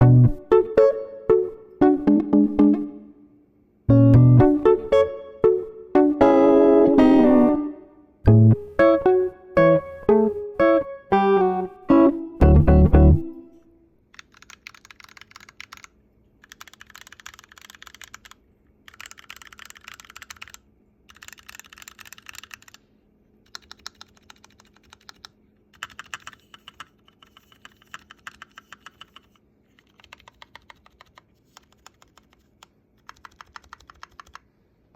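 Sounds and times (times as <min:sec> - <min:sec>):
mechanical keyboard typing: 0:14.1 - 0:22.8, 0:23.4 - 0:34.5.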